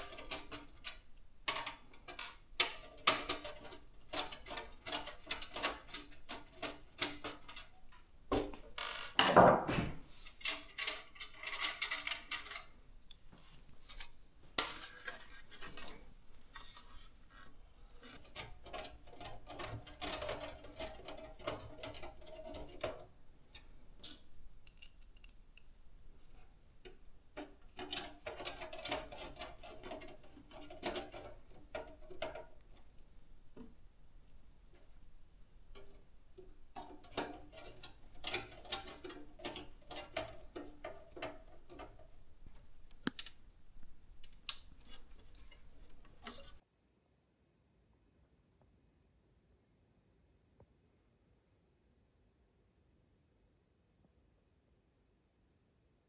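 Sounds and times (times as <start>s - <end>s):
clicks and taps of computer parts: 36.8s - 46.4s.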